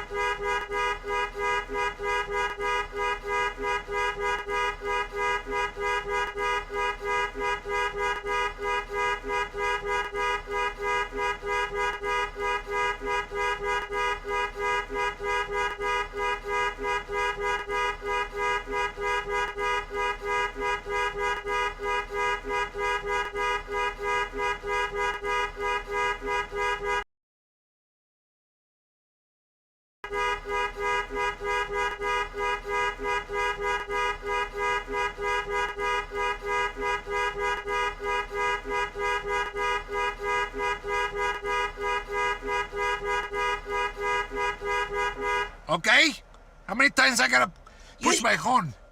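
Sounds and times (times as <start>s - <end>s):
car horn beeping: 0.0s - 27.1s, 30.0s - 48.9s.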